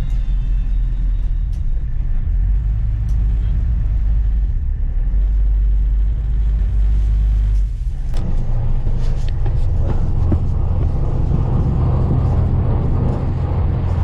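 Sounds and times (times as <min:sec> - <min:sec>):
ferry engine low rumble: 0:00.0 - 0:14.0.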